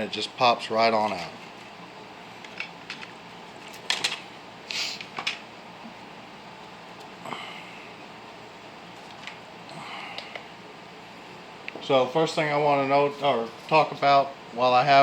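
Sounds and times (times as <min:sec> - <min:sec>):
short sniff-like hiss: 0:04.7 - 0:05.1.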